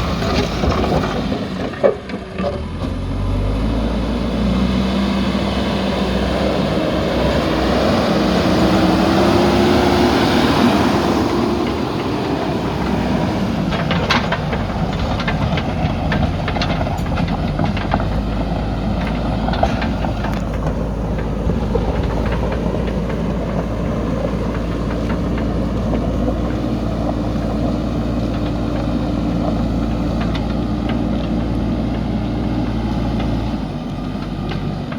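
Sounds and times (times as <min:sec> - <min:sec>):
diesel engine running: 0:00.0 - 0:34.9
metallic clanks and knocks: 0:13.7 - 0:32.0.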